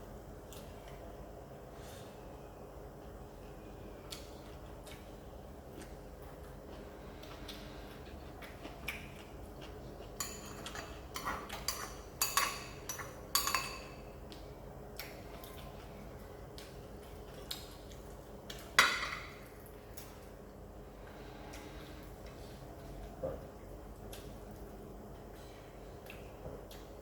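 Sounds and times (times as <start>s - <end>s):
utensils clinking against dishes: 10.2s - 14.2s.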